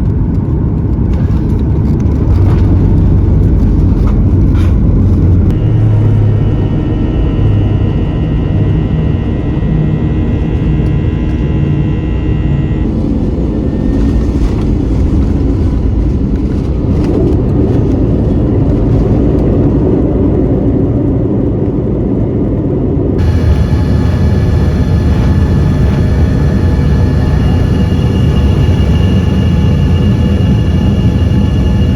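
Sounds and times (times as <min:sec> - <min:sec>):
jet airliner rumble: 0:00.0 - 0:31.9
thin high whine: 0:05.5 - 0:14.8, 0:23.2 - 0:31.9.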